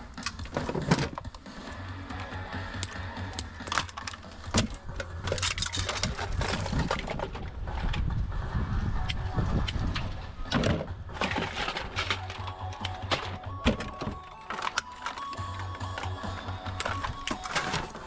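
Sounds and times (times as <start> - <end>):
knocks and clinks of scrap pieces: 11.2 - 18.0.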